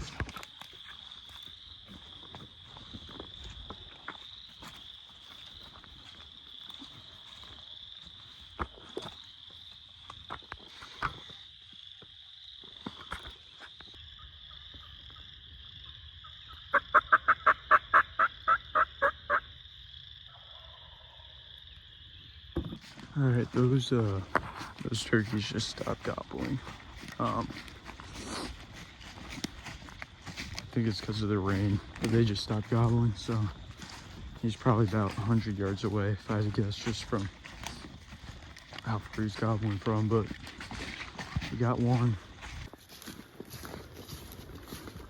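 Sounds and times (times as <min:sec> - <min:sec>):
wild turkey calling: 0:14.2 - 0:19.5.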